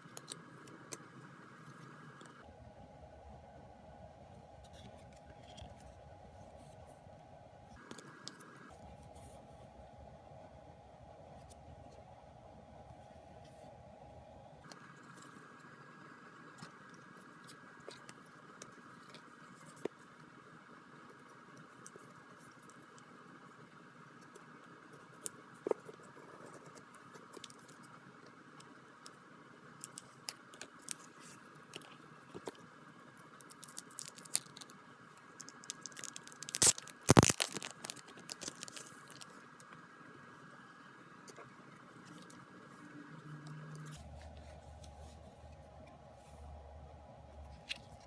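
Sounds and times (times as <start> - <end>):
faint steady hum: 0.0 - 48.0
packaging clicks and rustles: 33.4 - 39.4
packaging crinkling: 33.4 - 39.4.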